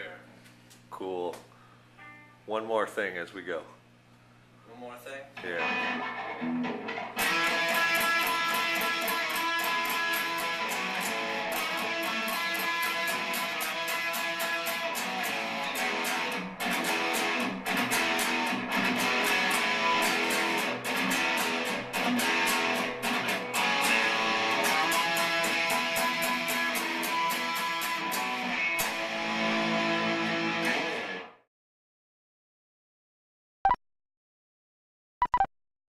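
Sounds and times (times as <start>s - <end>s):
strummed guitar chords: 5.4s - 31.4s.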